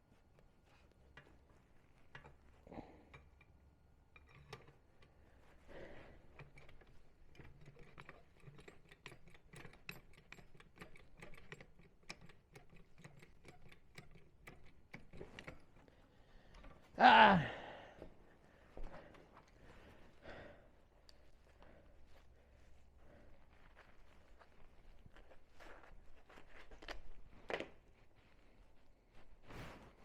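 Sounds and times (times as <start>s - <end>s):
hand tool clicking on lug nut: 7.4s - 15.9s.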